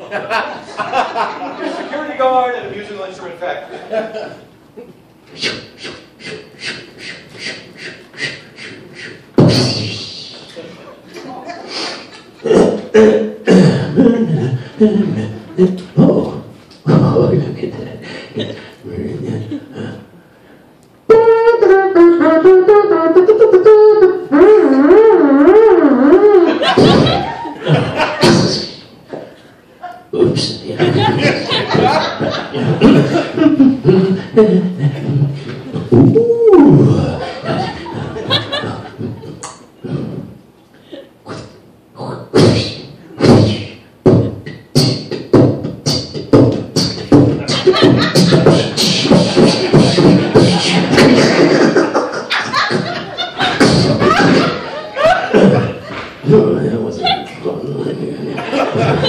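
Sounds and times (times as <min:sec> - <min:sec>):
man imitating a brass horn: 0:05.3 - 0:10.4, 0:21.1 - 0:28.8, 0:33.7 - 0:40.4, 0:41.3 - 0:51.8
man beatboxing into a microphone: 0:05.3 - 0:10.6, 0:11.7 - 0:20.1, 0:21.1 - 0:29.2, 0:30.1 - 0:40.5, 0:41.2 - 0:53.0, 0:53.6 - 0:54.6.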